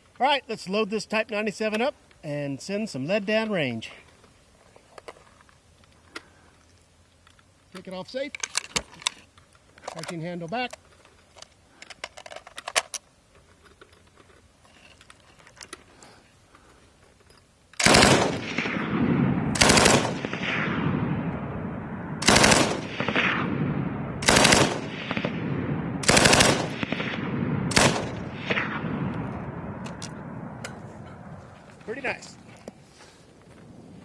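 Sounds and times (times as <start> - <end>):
machine gun bursts with echo: 17.8 - 21.2, 22.2 - 29.0.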